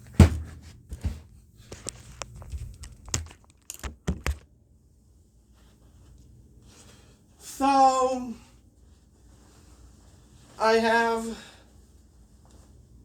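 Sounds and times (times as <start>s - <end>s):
knocks and thumps of handling: 0.0s - 4.5s.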